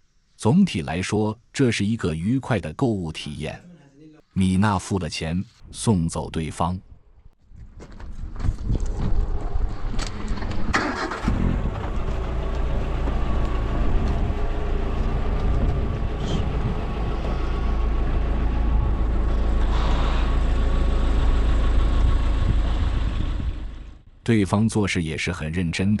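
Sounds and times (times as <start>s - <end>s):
engine starting: 8.4s - 12.2s, 19.6s - 20.4s
engine idling: 9.5s - 24.2s.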